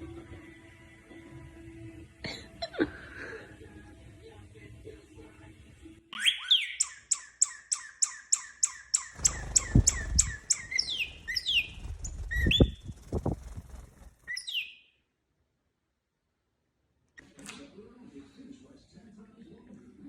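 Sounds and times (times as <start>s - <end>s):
bird chirping: 6.2s - 15.0s
low rumbling noise: 9.2s - 14.4s.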